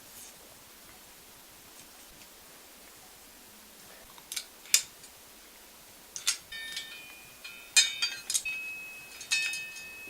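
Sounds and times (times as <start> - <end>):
metal parts clinking: 6.2 - 10.0.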